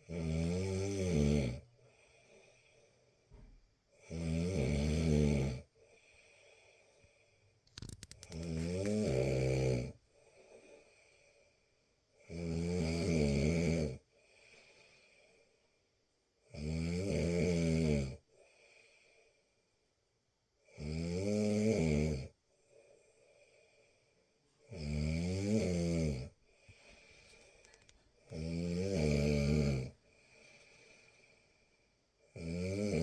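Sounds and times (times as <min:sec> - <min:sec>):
deep snoring: 0:00.0 - 0:01.7, 0:04.0 - 0:05.7, 0:08.2 - 0:10.0, 0:12.2 - 0:14.0, 0:16.5 - 0:18.2, 0:20.7 - 0:22.4, 0:24.6 - 0:26.4, 0:27.5 - 0:31.4, 0:32.3 - 0:33.0
quiet breathing: 0:01.6 - 0:04.0, 0:05.6 - 0:12.2, 0:14.0 - 0:16.0, 0:18.2 - 0:20.0, 0:22.4 - 0:24.7, 0:26.3 - 0:32.4
rattle of clicks: 0:07.7 - 0:08.9.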